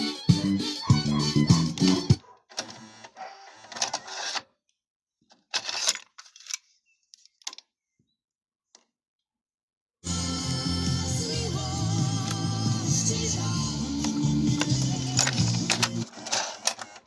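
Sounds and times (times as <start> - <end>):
music from cassette deck: 0.0 - 3.0, 10.0 - 17.0
cassette mechanism clicks and whirs: 0.9 - 4.4, 10.4 - 17.0.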